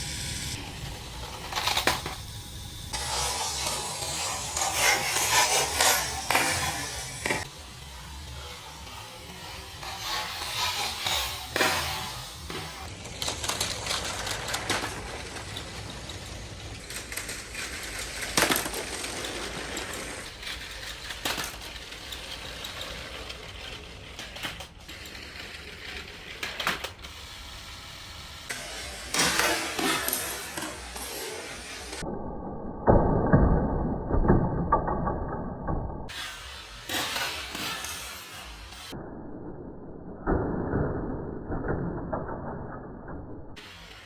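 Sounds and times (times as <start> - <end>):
plastic bricks clattering: 12.8 - 27.2.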